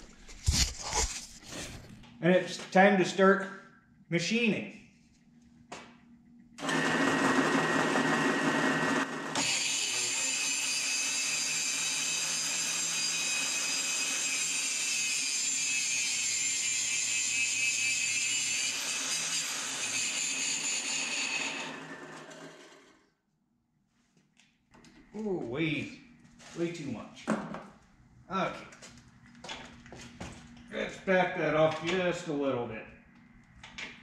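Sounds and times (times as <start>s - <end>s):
angle grinder whine: 6.6s - 14.8s, 15.6s - 23.0s
drill press motor: 6.6s - 14.8s, 18.7s - 23.0s
grinding steel: 7.6s - 23.0s.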